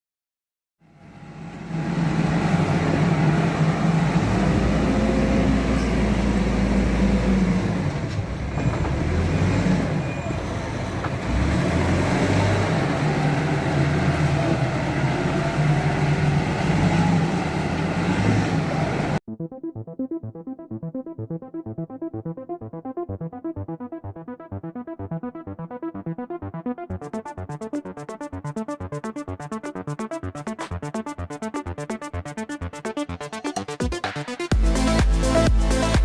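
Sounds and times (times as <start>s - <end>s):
backhoe diesel engine running: 0.9s - 19.2s.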